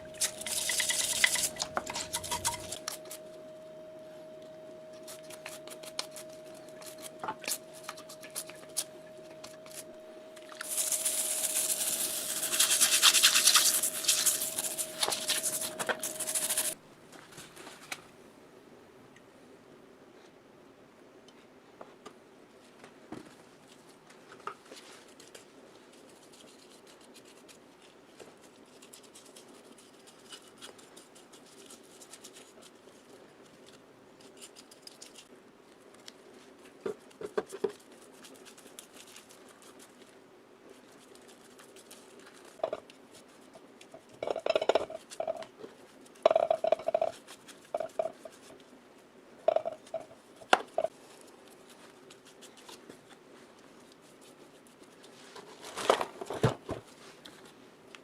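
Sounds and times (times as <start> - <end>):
faint steady hum: 0.0 - 58.0
metal tools clicking and scraping: 0.2 - 3.2.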